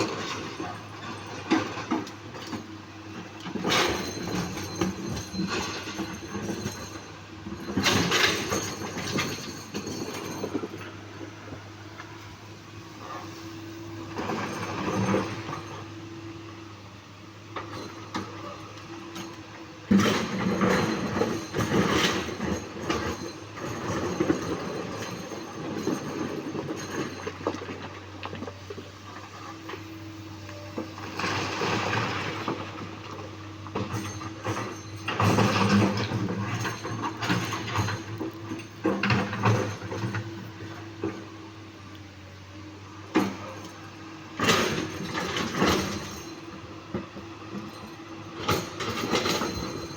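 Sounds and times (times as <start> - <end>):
excavator diesel engine running: 0.0 - 49.9
boulders clattering against bucket: 31.1 - 40.4.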